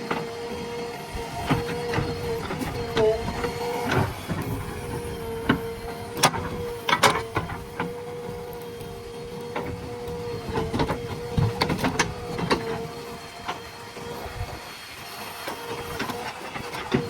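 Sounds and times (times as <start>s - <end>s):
backhoe loader whining: 0.0s - 17.0s
clanks and knocks: 9.5s - 12.8s.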